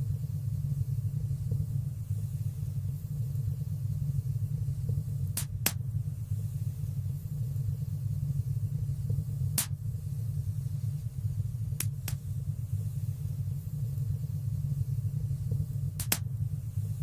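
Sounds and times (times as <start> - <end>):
fire low rumble: 0.0 - 17.0
fire crackling pops: 4.6 - 6.1, 8.7 - 10.2, 11.6 - 13.0, 15.4 - 16.6.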